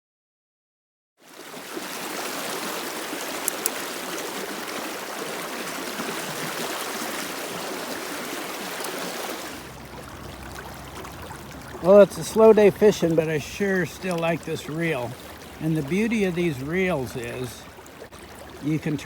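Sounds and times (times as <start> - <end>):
river water rushing: 1.3 - 19.0
sharp clicks: 3.4 - 3.8.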